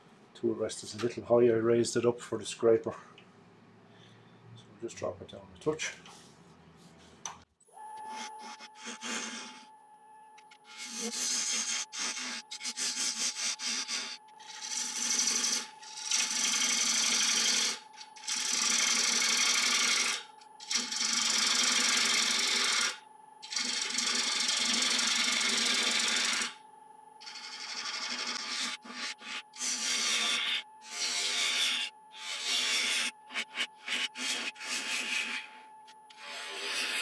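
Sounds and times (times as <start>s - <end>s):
lathe humming: 7.8s - 37.0s
gouge cutting wood on a lathe: 10.7s - 26.6s, 27.2s - 37.0s.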